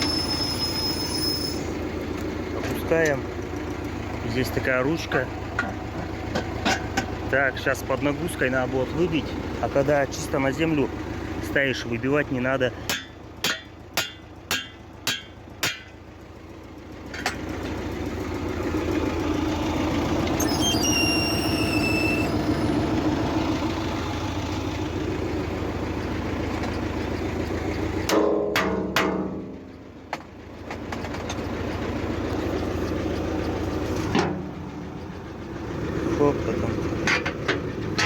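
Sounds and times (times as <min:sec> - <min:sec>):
high squeal: 0:00.0 - 0:01.8, 0:20.2 - 0:23.6
tractor engine running: 0:00.0 - 0:38.0.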